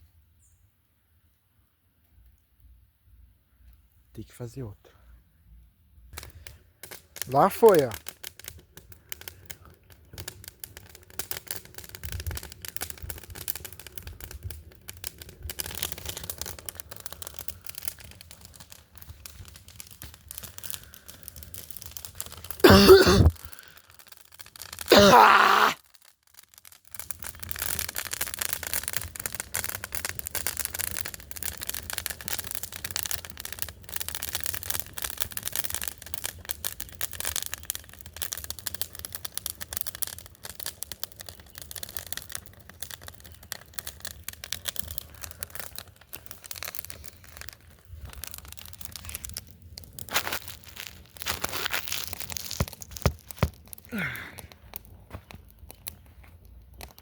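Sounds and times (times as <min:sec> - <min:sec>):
dry brush crackling: 0:45.0 - 0:56.4.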